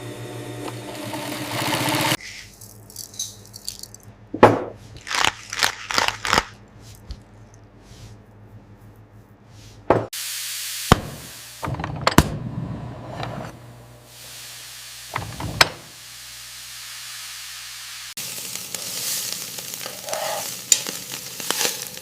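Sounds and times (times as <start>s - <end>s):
food sizzling in a pan: 10.2s - 11.6s, 14.0s - 15.2s, 15.9s - 22.0s.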